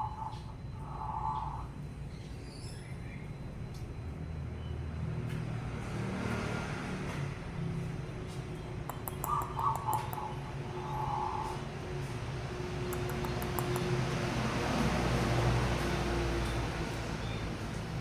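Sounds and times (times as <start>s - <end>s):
dove cooing: 0.0s - 1.8s, 9.2s - 11.8s
vehicle passing by: 4.9s - 8.8s, 10.0s - 18.0s.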